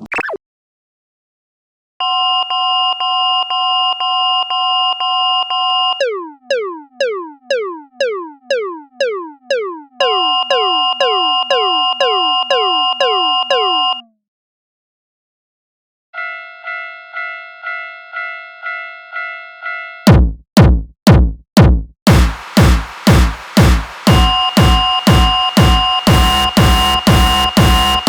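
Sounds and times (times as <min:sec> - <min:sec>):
quick falling pew tones: 0:06.0 - 0:14.0
railroad crossing warning bell: 0:16.2 - 0:20.0.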